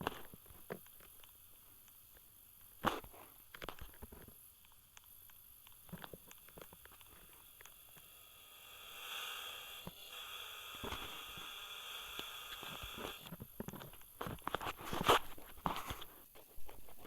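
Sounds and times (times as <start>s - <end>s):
small clicks: 0.2s - 8.1s.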